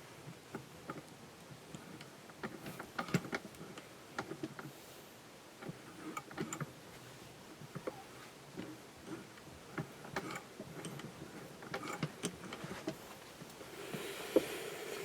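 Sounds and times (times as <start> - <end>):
metal parts clicking and tapping: 1.7 - 4.7, 5.6 - 6.7, 8.6 - 13.0.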